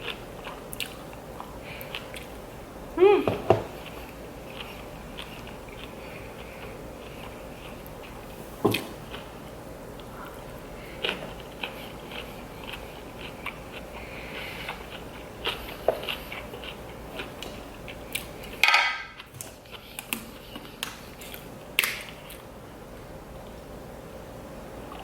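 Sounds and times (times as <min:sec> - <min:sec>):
person chewing crunchy food: 0:00.0 - 0:02.6, 0:03.4 - 0:22.5.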